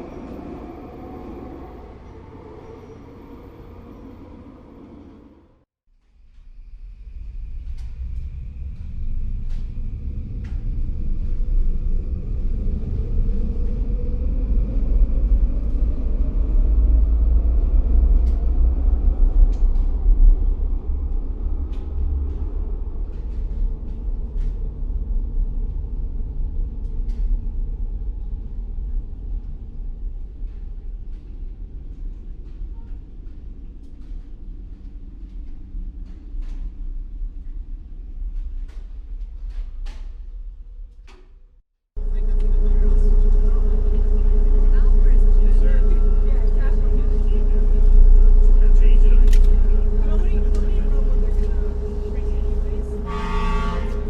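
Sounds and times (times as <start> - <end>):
large vehicle passing: 42.0 - 54.0.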